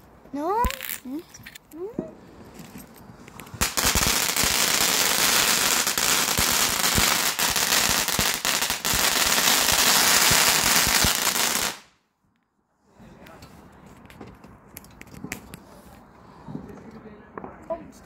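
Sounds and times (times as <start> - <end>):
firework hissing and crackling: 3.4 - 11.9.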